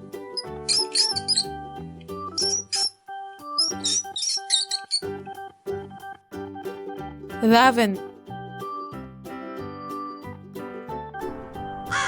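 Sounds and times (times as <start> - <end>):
rat squeaking: 0.4 - 1.4, 2.4 - 3.0, 3.6 - 5.2
keyboard music: 7.4 - 8.0.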